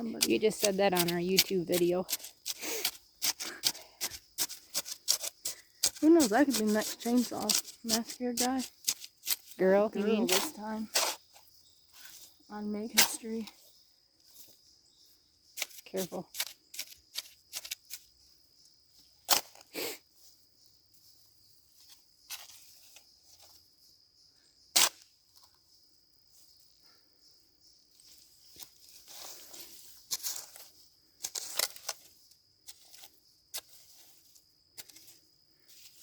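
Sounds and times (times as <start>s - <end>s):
shovel blade scraping soil: 0.0s - 11.4s, 15.5s - 18.1s, 21.9s - 23.5s, 24.7s - 25.0s, 28.6s - 36.0s.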